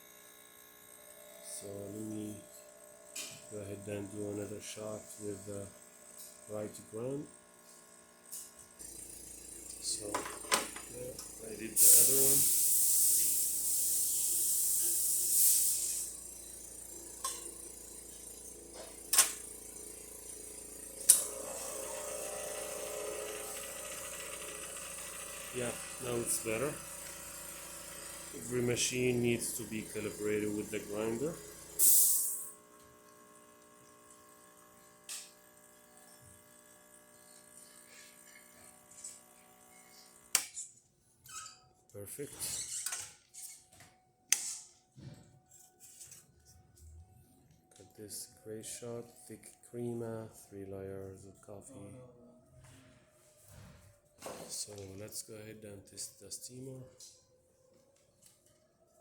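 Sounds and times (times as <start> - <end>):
espresso machine steam hiss: 7.6 - 40.3.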